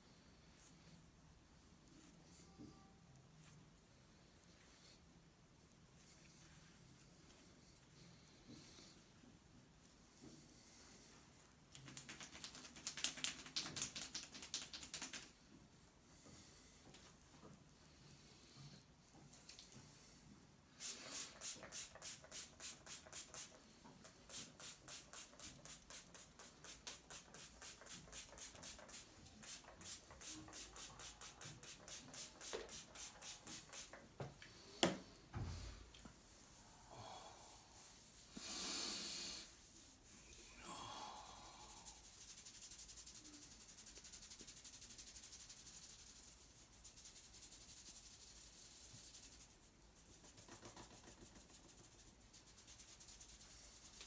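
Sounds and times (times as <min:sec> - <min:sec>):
hands rubbing skin: 0:11.7 - 0:15.4, 0:20.8 - 0:34.0, 0:41.8 - 0:54.0.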